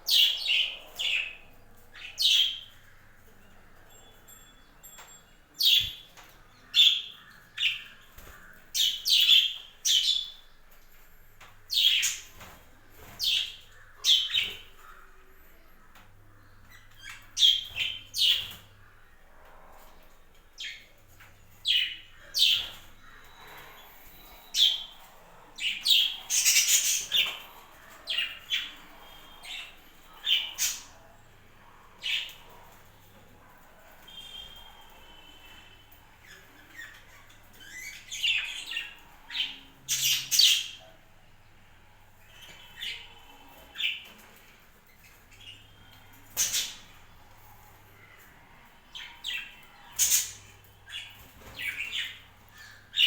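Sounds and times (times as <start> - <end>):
budgerigars chirping: 21.7 - 31.0.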